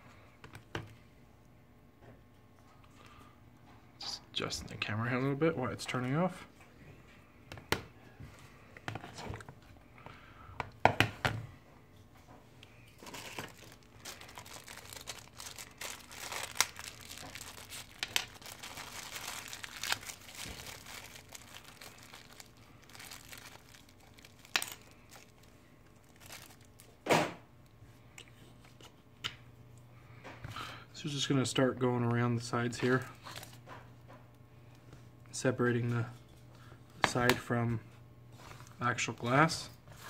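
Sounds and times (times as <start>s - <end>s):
plastic rustling and crinkling: 12.8s - 27.0s.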